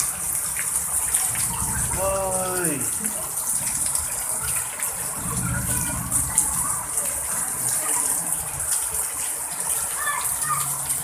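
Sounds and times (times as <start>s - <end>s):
heavy rain in wind: 0.0s - 11.0s
low rumble: 1.3s - 3.0s, 5.1s - 7.2s.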